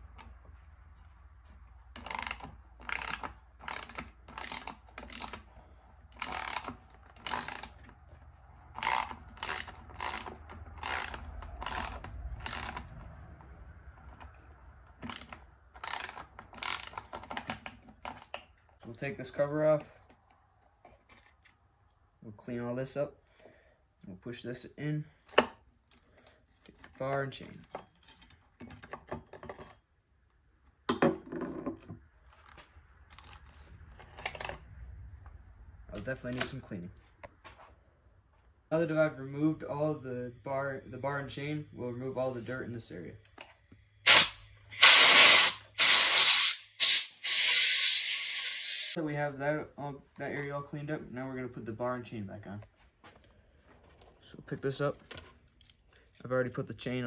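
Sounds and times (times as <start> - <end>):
socket ratchet clicking: 2.0 - 5.5, 6.2 - 7.8, 8.7 - 13.0, 15.0 - 17.6.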